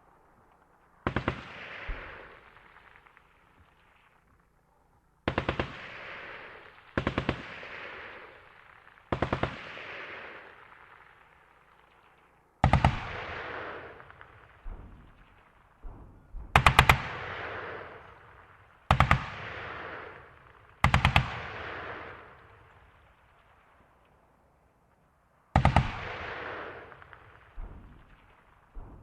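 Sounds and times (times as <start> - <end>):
single gunshots: 12.6 - 22.5.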